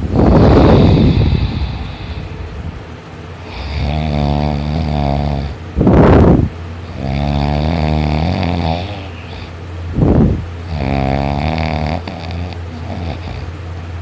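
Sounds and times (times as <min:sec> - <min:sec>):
heavy snoring: 0:00.2 - 0:02.4, 0:03.4 - 0:09.6, 0:10.6 - 0:13.5
rushing heavy breath: 0:00.2 - 0:02.6.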